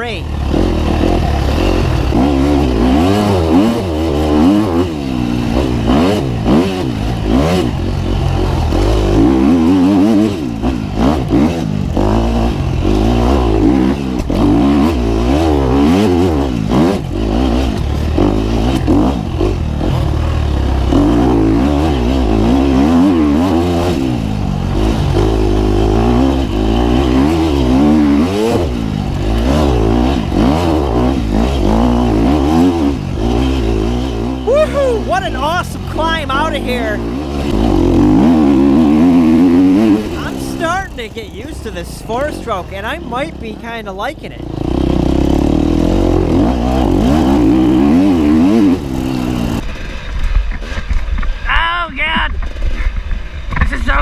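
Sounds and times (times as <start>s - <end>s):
dirt bike engine revving: 0.0s - 34.5s, 44.4s - 49.6s.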